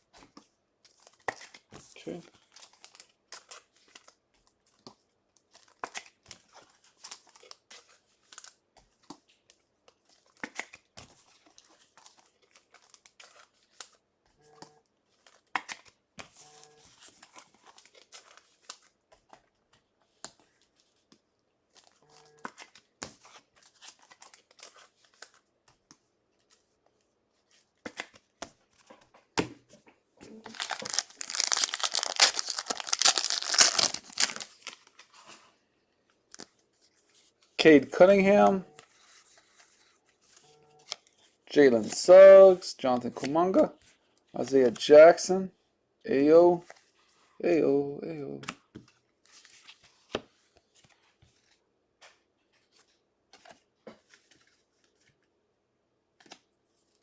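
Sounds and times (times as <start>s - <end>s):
wrapper tearing and crinkling: 30.5s - 35.0s
cards clicking and rustling: 30.5s - 35.1s.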